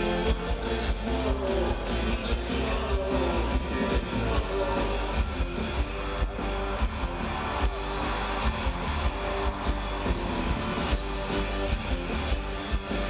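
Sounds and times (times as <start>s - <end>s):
steady beat: 4.0s - 13.0s.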